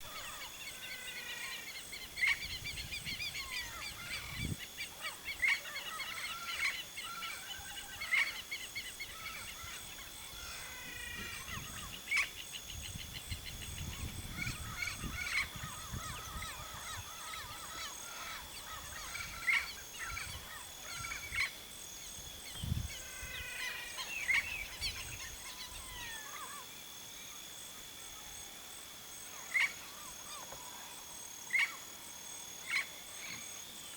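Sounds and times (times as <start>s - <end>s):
small birds chirping and trilling: 0.0s - 26.7s
parrots calling loudly: 14.3s - 21.5s.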